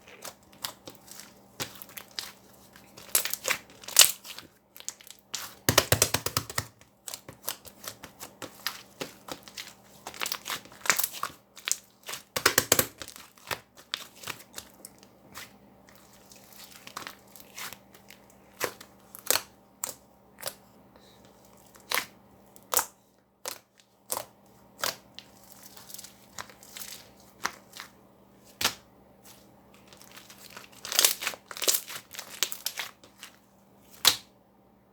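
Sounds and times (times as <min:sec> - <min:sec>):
slime clicking and crackling: 0:00.0 - 0:15.0, 0:29.9 - 0:33.3.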